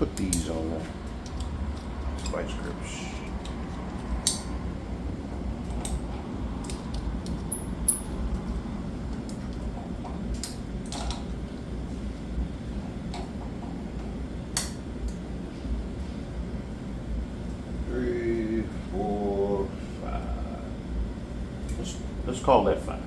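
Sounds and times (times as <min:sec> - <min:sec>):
steady low rumble: 0:00.0 - 0:23.0
metallic clicks of hand tools: 0:04.2 - 0:04.5.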